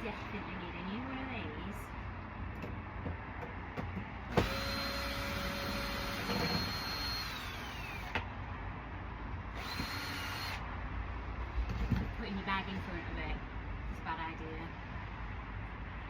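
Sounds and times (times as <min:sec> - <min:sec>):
power drill running: 0:04.3 - 0:08.2, 0:09.5 - 0:10.6.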